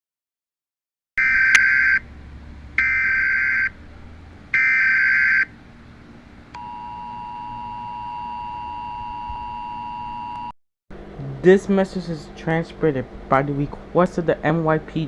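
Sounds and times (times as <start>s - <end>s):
two-tone attention signal: 6.6s - 10.5s.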